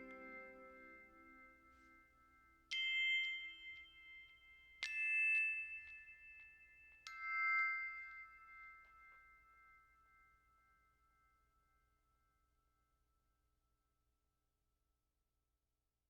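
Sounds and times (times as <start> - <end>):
calm background music: 0.0 - 1.7.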